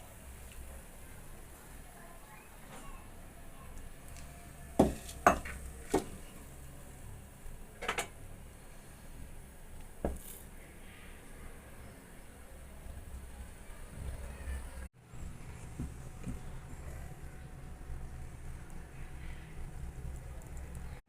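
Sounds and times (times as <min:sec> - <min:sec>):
kitchenware clinking and knocking: 0:04.8 - 0:06.2, 0:07.8 - 0:08.2.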